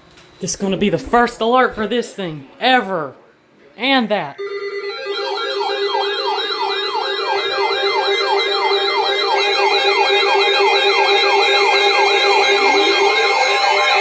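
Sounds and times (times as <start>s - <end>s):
electronic siren alarm yelping: 4.4s - 14.0s.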